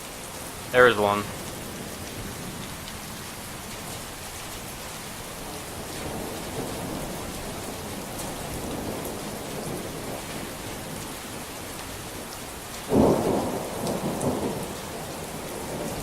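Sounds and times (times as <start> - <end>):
heavy rain pouring: 0.0 - 16.0
low rumble of thunder: 5.2 - 11.5, 12.2 - 16.0.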